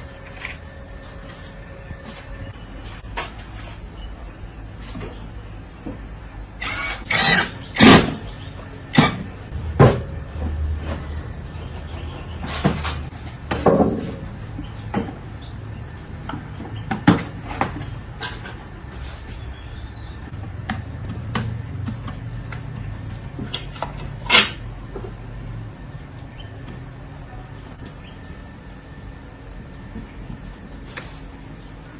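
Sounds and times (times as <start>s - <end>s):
objects knocking and scraping: 16.3s - 19.4s
low steady hum: 18.0s - 31.9s.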